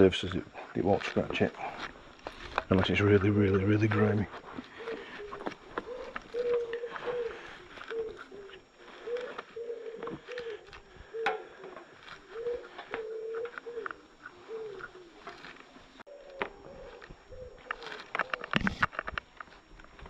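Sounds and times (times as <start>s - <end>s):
pigeon cooing: 1.4s - 18.9s.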